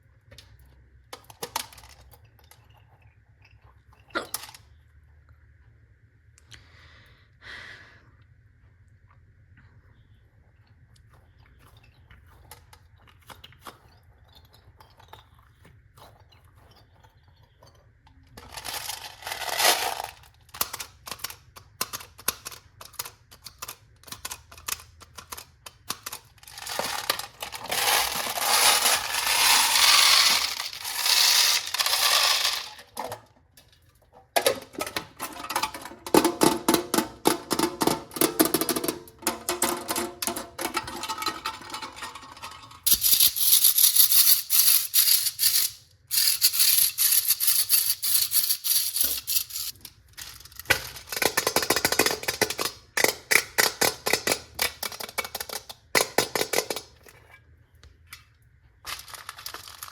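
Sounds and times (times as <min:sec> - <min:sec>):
hard candies clattering into plastic: 0:18.4 - 0:57.0, 0:58.8 - 0:59.9.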